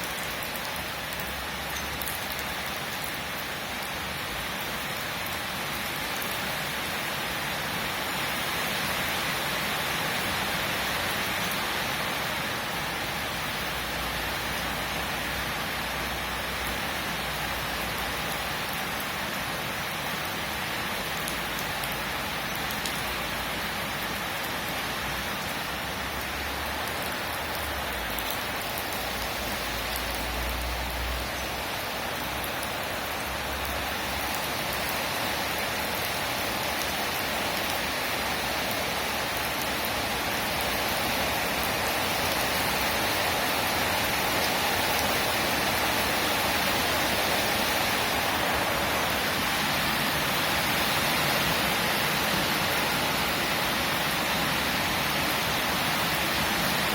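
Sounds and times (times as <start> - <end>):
steady rain falling: 0.0 - 56.9.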